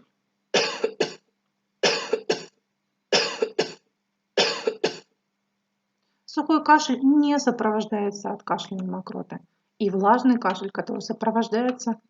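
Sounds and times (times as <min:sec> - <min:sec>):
person coughing: 0:00.6 - 0:02.6, 0:03.2 - 0:05.1.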